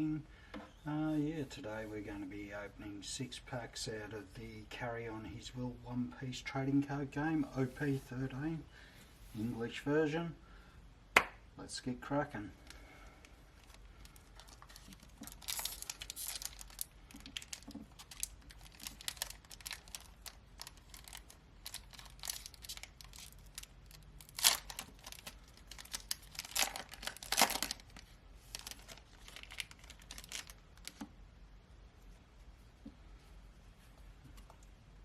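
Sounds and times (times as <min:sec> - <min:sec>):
foil packs crinkling: 0:12.6 - 0:31.1
foil ripping: 0:14.1 - 0:31.0.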